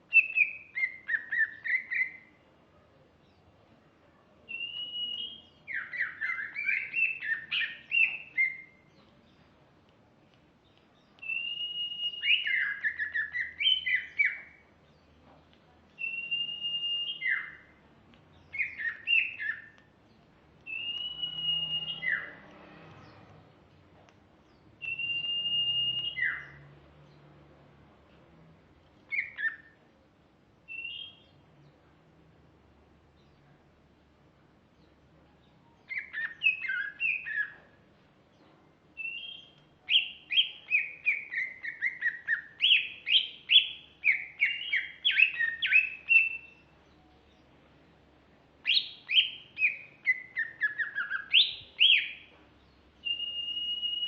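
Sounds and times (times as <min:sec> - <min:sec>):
bird singing whistles and chirps: 0:00.0 - 0:02.4, 0:04.4 - 0:09.5, 0:10.6 - 0:15.2, 0:15.9 - 0:20.0, 0:20.6 - 0:23.5, 0:24.5 - 0:27.2, 0:29.0 - 0:29.8, 0:30.7 - 0:31.9, 0:34.8 - 0:47.6, 0:48.6 - 0:54.0.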